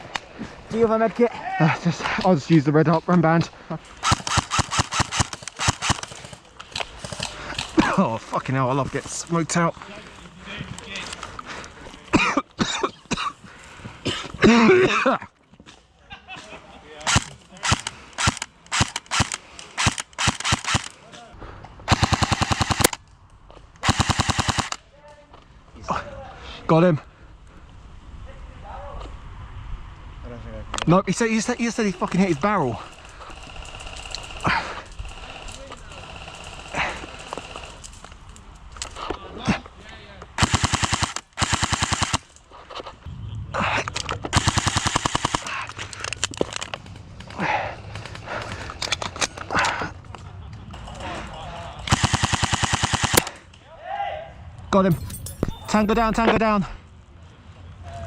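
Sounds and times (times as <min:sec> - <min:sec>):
airsoft rifle shots: 0:04.0 - 0:06.4, 0:17.0 - 0:20.9, 0:21.9 - 0:23.0, 0:23.8 - 0:24.8, 0:40.4 - 0:42.3, 0:44.3 - 0:45.6, 0:51.9 - 0:53.4.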